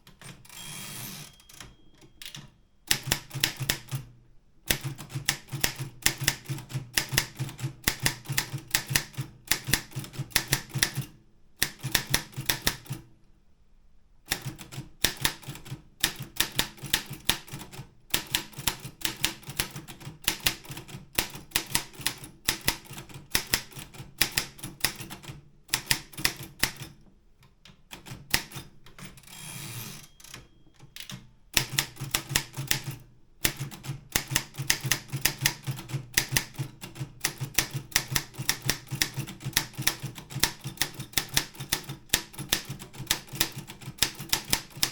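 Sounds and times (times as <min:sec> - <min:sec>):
typewriter carriage sliding: 0:00.0 - 0:01.8, 0:29.0 - 0:30.5
typewriter keystrokes: 0:00.0 - 0:04.1, 0:04.7 - 0:13.0, 0:14.3 - 0:27.0, 0:27.9 - 0:44.9.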